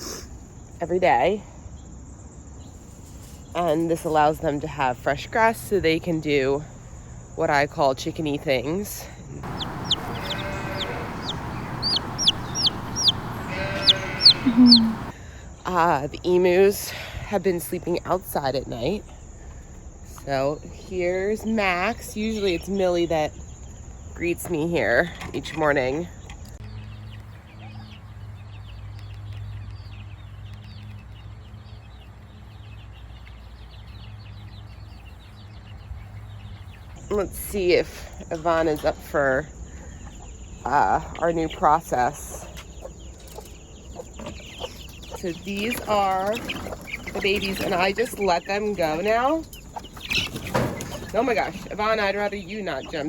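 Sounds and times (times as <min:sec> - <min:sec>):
hen low murmur: 0:09.4 - 0:15.1
low hum: 0:09.4 - 0:15.1
chicks peeping: 0:09.4 - 0:15.2, 0:40.0 - 0:53.0.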